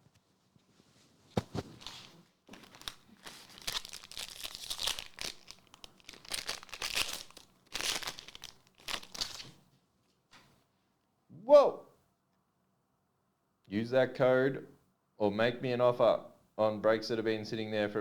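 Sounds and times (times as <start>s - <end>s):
plastic foil wrappers crinkling: 1.4s - 9.6s.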